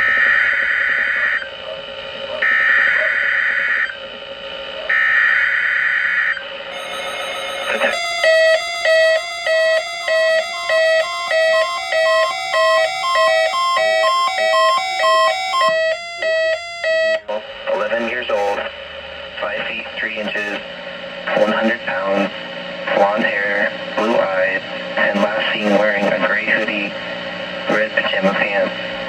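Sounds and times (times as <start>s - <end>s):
buzzing digital data tone: 6.3s - 17.2s
pulsing electronic alert beep: 6.7s - 17.2s.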